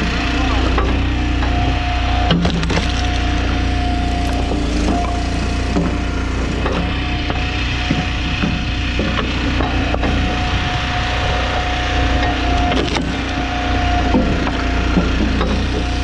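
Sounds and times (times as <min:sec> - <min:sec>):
chainsaw cutting wood: 0:00.0 - 0:16.0
wood cracking and ticking: 0:02.3 - 0:06.8, 0:12.6 - 0:13.4.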